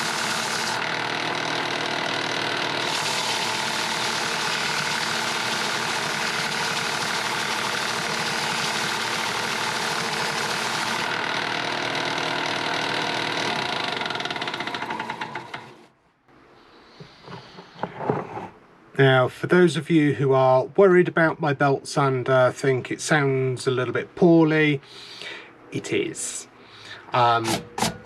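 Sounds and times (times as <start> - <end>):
belt sander running: 0.0 - 15.9.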